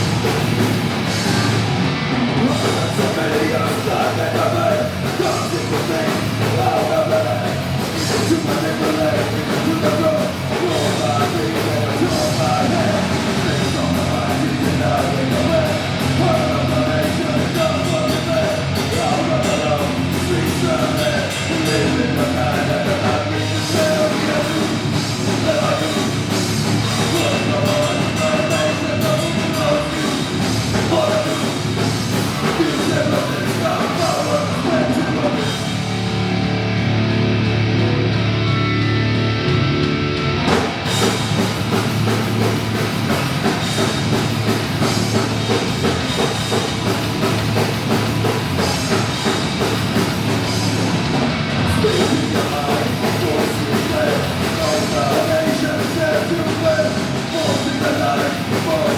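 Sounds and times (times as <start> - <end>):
bass guitar: 0.0 - 58.9
distorted electric guitars: 0.0 - 58.9
drum kit: 0.0 - 58.9
person singing: 2.4 - 35.8, 51.7 - 58.9.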